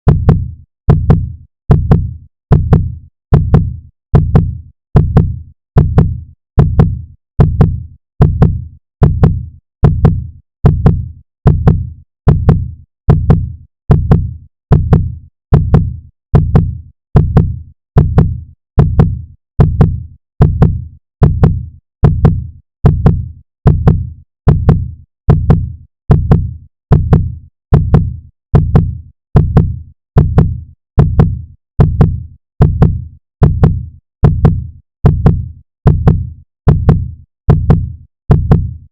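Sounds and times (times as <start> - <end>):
heartbeat: 0.0 - 38.9.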